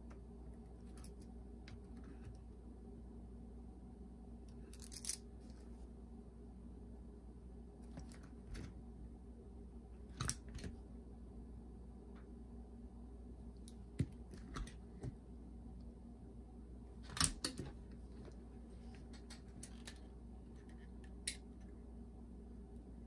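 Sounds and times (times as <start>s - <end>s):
steady low hum: 0.0s - 23.0s
small tools and metal parts clicking: 4.5s - 5.3s.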